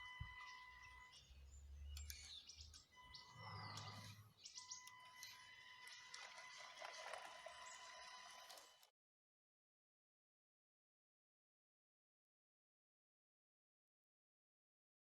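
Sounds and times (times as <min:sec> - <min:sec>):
faint bird chirps: 0:00.0 - 0:08.8
faint steady high tone: 0:00.0 - 0:08.8.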